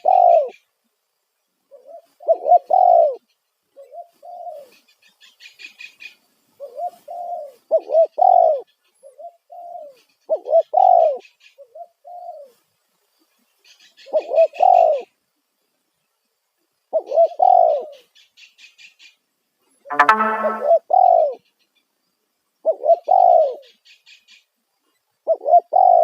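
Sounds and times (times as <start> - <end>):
dove cooing: 0.0 - 0.6, 1.8 - 3.2, 6.6 - 8.6, 9.2 - 12.5, 17.0 - 18.0, 22.7 - 23.6, 25.3 - 26.0.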